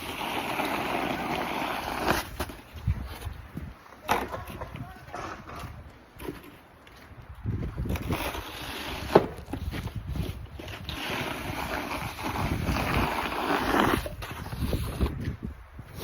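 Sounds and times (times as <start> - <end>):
snow shovel scraping snow: 0.0 - 3.3, 7.8 - 15.2.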